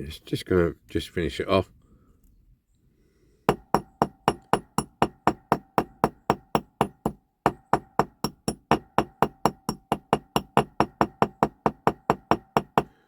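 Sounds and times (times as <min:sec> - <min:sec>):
small hammer tapping metal: 0:03.5 - 0:13.0.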